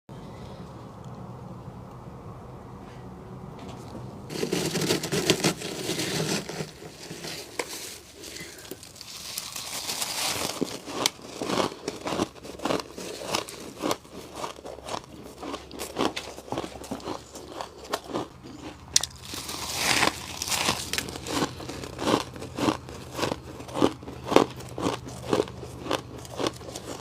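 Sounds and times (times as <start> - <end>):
ice being chewed: 4.3 - 27.0.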